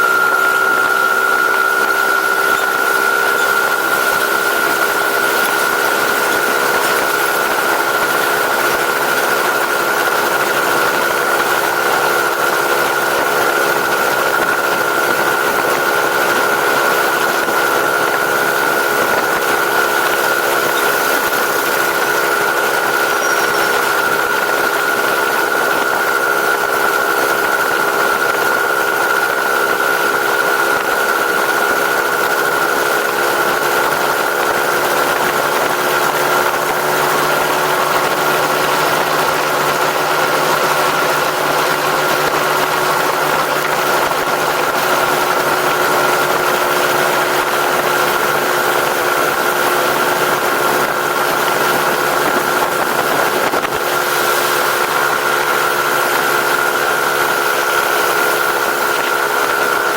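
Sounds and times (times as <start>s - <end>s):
high whine: 0.0s - 26.2s
engine idling: 0.0s - 59.9s.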